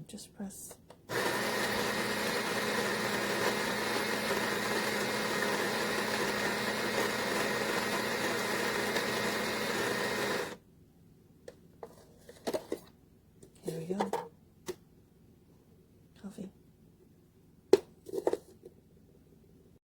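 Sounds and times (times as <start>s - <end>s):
electric coffee grinder grinding: 1.1s - 10.6s.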